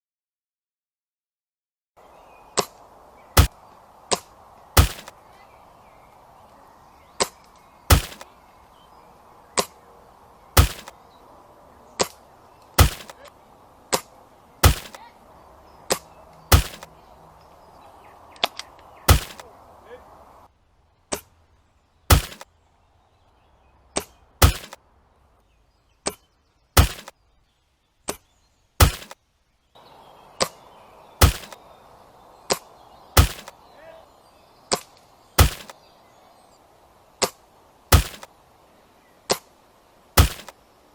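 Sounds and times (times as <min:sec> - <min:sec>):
steady hiss: 0:02.0 - 0:40.9
airsoft rifle shots cracking: 0:03.4 - 0:05.2, 0:07.2 - 0:08.3, 0:10.6 - 0:11.0, 0:12.0 - 0:15.2, 0:15.9 - 0:16.9, 0:18.4 - 0:20.0, 0:22.1 - 0:22.5, 0:24.0 - 0:24.8, 0:26.8 - 0:27.2, 0:28.8 - 0:29.2, 0:30.4 - 0:31.7, 0:32.5 - 0:33.8, 0:34.7 - 0:35.8, 0:37.2 - 0:38.3, 0:40.2 - 0:40.6.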